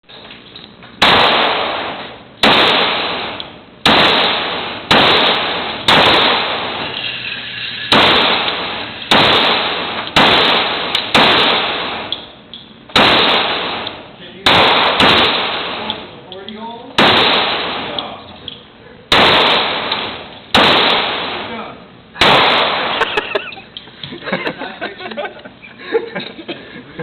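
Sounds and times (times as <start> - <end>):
pistol shots echoing indoors: 1.0 - 6.8, 7.9 - 12.1, 12.9 - 16.0, 17.0 - 18.0, 19.1 - 21.5, 22.2 - 22.9.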